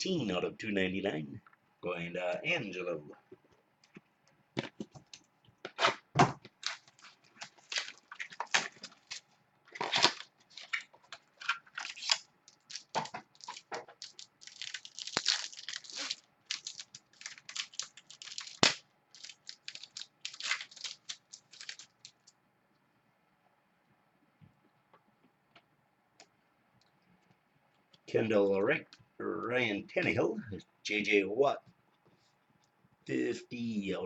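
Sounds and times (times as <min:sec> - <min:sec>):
plastic packaging crinkling: 0:05.0 - 0:22.4.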